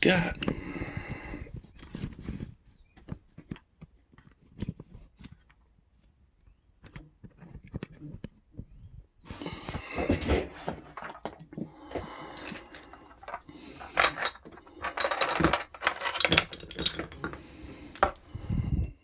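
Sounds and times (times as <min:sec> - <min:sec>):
metal tools clinking and rattling: 0:10.0 - 0:18.3.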